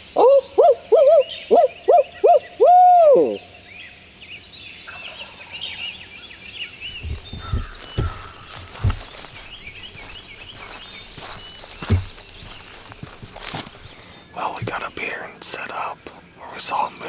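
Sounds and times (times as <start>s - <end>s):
hooting bird calls: 0.0s - 17.0s
songbirds chirping: 0.0s - 17.0s
low thumps: 6.9s - 15.1s.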